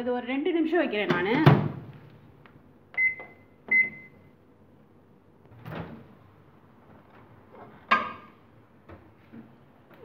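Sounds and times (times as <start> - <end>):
microwave keypad beeps: 3.0 - 4.3.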